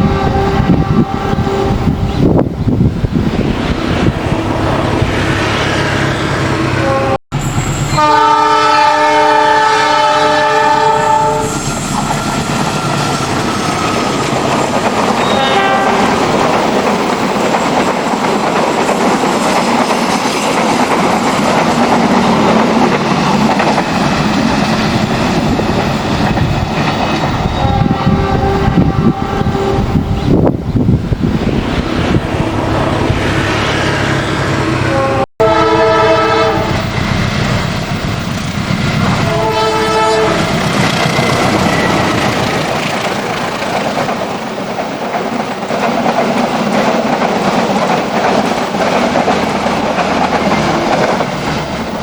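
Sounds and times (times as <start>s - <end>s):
train horn blast: 0.0s - 2.4s, 6.3s - 16.4s, 27.5s - 30.5s, 32.4s - 36.9s, 39.0s - 40.7s
train wheels on rails: 0.0s - 52.0s.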